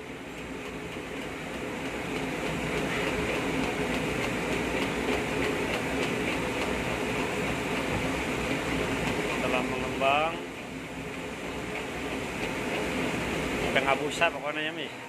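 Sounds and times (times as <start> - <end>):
steady mechanical hum: 0.0 - 15.0
whisk clicking in a bowl: 0.3 - 7.8.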